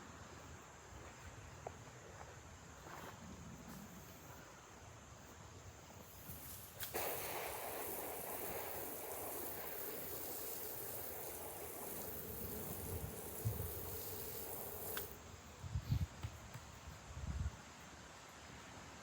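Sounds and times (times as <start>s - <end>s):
hose nozzle spraying water: 6.1s - 15.2s.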